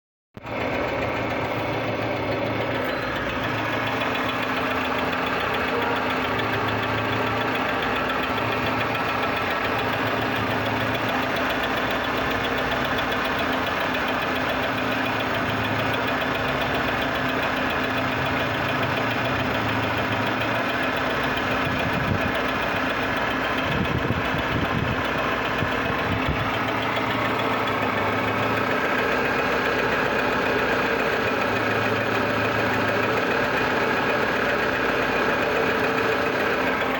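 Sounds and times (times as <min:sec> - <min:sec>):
engine running with pulsing hum: 0:00.4 - 0:36.9.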